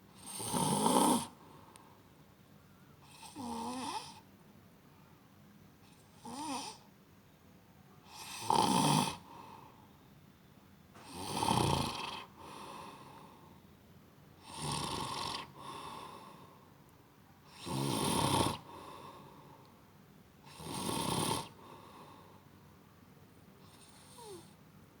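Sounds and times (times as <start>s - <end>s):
person snoring loudly: 0.2s - 1.3s, 8.2s - 9.2s, 11.1s - 12.3s, 14.5s - 15.5s, 17.5s - 18.7s, 20.5s - 21.6s
quiet breath: 1.2s - 6.9s, 9.2s - 10.4s, 12.2s - 13.8s, 15.4s - 17.6s, 18.6s - 20.6s, 21.4s - 22.9s, 23.6s - 25.0s.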